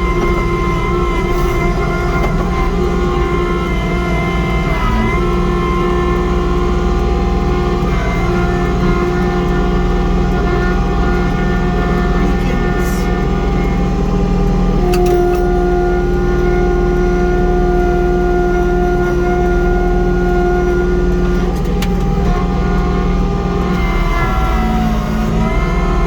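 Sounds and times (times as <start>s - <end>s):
diesel tractor running under load: 0.0s - 26.0s
snowblower whine: 0.0s - 26.0s.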